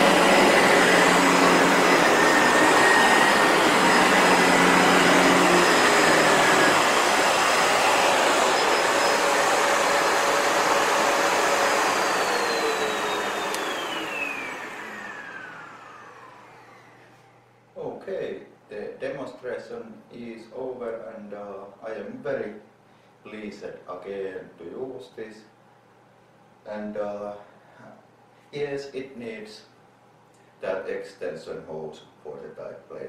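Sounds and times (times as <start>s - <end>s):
motor whine winding down: 0.0s - 17.1s
vacuum cleaner running: 0.0s - 17.4s.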